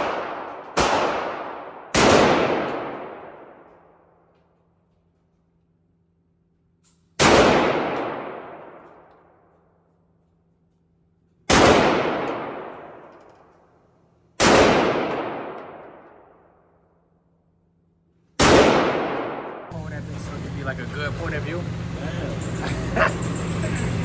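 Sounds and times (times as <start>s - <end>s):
gunshots with echoing decay: 0.0s - 4.2s, 7.2s - 9.4s, 11.5s - 13.7s, 14.4s - 16.8s, 18.4s - 19.8s.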